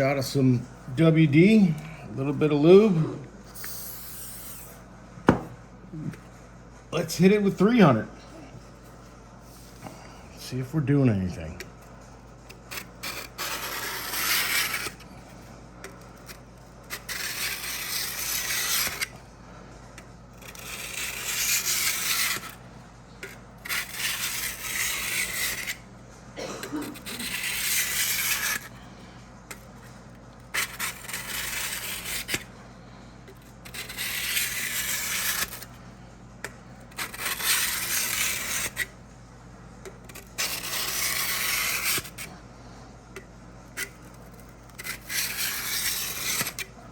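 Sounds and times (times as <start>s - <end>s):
blade scraping on sharpening block: 12.7s - 15.0s, 17.0s - 19.1s, 20.5s - 22.6s, 23.6s - 25.8s, 26.9s - 28.7s, 30.6s - 32.4s, 33.6s - 35.6s, 37.0s - 38.9s, 40.4s - 42.3s, 44.8s - 46.7s.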